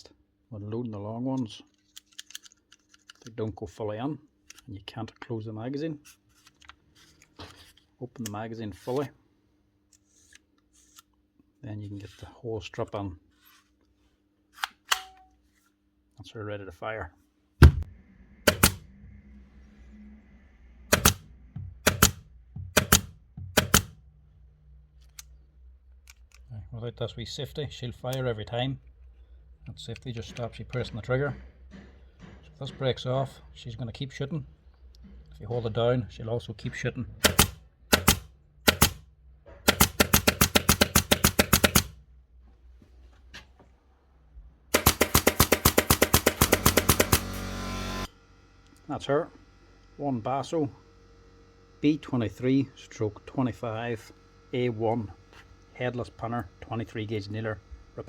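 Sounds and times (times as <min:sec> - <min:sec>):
pneumatic nailer sharp double cracks: 0:18.5 - 0:18.8, 0:20.9 - 0:21.2, 0:21.8 - 0:22.2, 0:22.8 - 0:24.0, 0:37.2 - 0:39.0, 0:39.7 - 0:42.0, 0:44.7 - 0:48.1.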